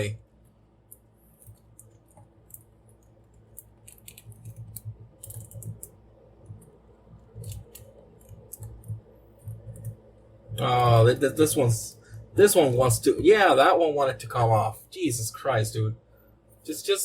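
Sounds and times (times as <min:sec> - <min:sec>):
plastic toy parts clicking: 0:03.5 - 0:05.9.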